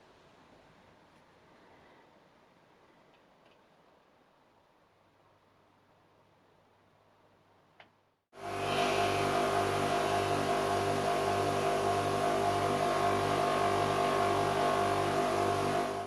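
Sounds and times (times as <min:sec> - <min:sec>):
bench grinder motor hum: 0:08.4 - 0:16.0.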